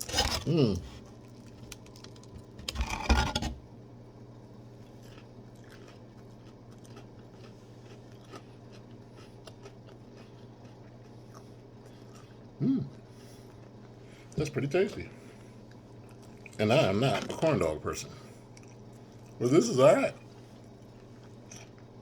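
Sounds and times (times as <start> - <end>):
crackly chewing: 0.0 - 3.1, 4.6 - 17.6, 18.2 - 22.0
loud crunch of a bite: 4.9 - 11.4
person humming approval: 12.6 - 12.9.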